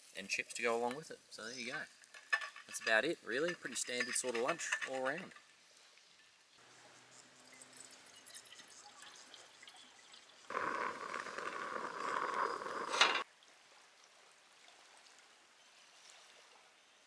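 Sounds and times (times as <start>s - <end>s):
liquid pouring: 7.4s - 13.2s.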